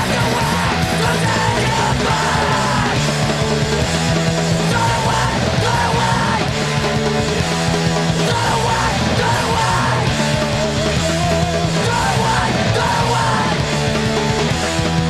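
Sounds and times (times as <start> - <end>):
shouted vocals: 0.0 - 3.3, 4.5 - 7.1, 8.0 - 13.9
hardcore punk music: 0.0 - 15.0.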